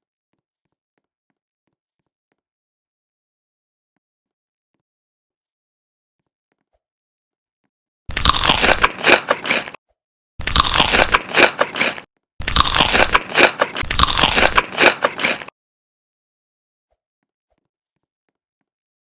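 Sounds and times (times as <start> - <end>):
crunchy food being chewed: 8.1 - 9.8, 10.4 - 15.5.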